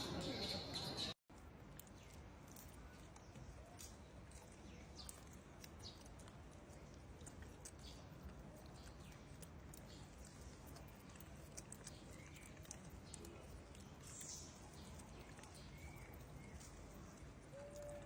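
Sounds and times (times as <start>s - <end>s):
small ticks and rustles: 1.3s - 18.0s.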